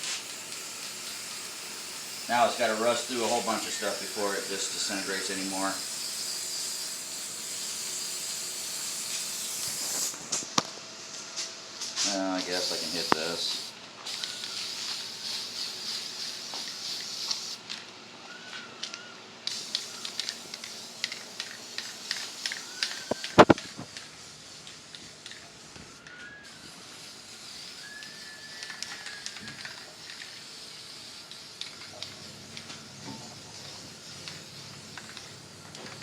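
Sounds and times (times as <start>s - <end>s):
spray paint hissing: 0.0s - 10.6s, 11.4s - 17.8s, 19.4s - 36.0s.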